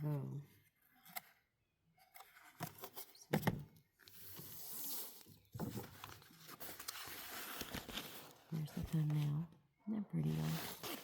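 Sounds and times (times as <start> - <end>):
packaging rustling and rubbing: 4.1 - 9.1, 10.4 - 11.0.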